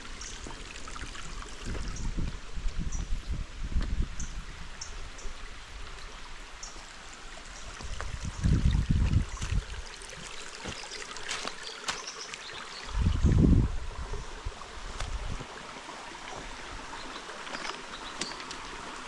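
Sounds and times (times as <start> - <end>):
creek water over rocks: 0.0 - 19.0.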